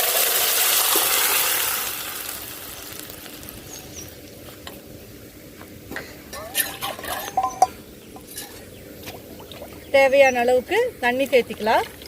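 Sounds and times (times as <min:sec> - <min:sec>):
liquid sizzling in hot oil: 0:00.0 - 0:05.6, 0:06.3 - 0:09.9.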